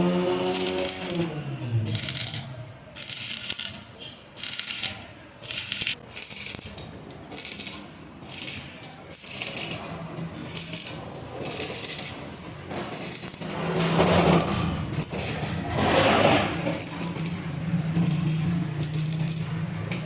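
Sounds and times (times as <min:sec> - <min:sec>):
scraping on metal: 0:08.3 - 0:19.6.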